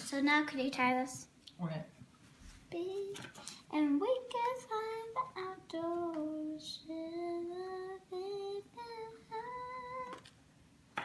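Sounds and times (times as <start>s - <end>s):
child singing: 2.7s - 10.3s.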